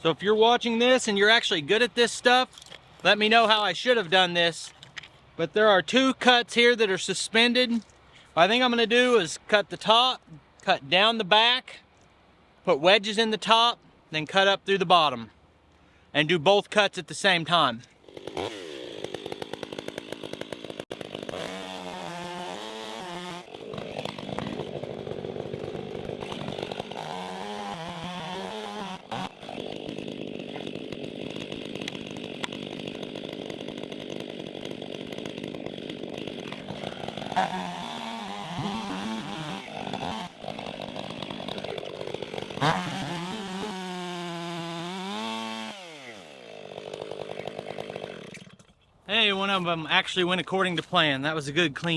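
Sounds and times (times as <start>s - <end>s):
chainsaw cutting log: 17.8s - 48.8s.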